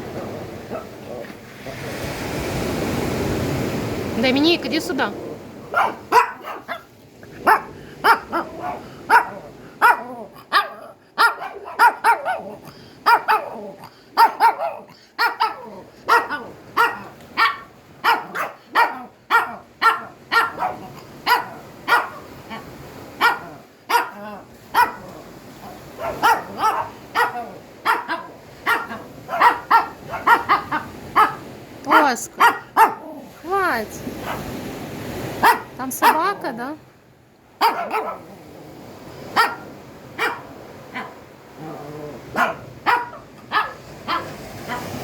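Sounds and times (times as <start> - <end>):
dog barking: 0.6 - 1.0, 5.6 - 33.2, 34.2 - 34.5, 35.4 - 36.4, 37.6 - 38.4, 39.3 - 41.7, 42.3 - 45.0.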